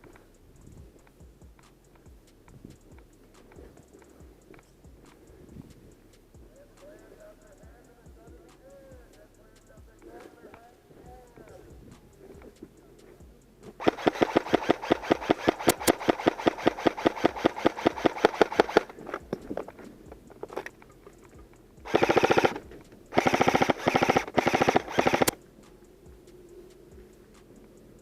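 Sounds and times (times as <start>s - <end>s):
airsoft guns firing: 13.6s - 25.4s.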